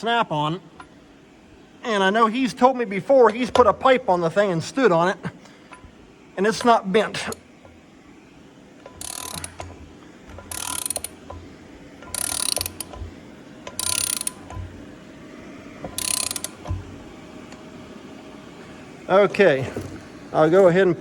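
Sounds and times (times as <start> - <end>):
ratchet clicking: 8.8 - 14.8, 15.8 - 17.0.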